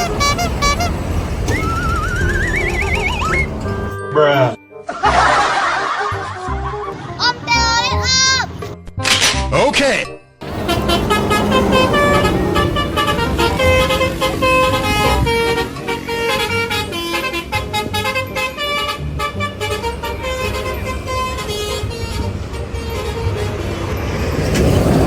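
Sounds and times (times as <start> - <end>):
musical air horns playing a tune: 0.0 - 3.9, 10.4 - 24.4
bus engine running: 0.0 - 4.0, 10.4 - 25.0.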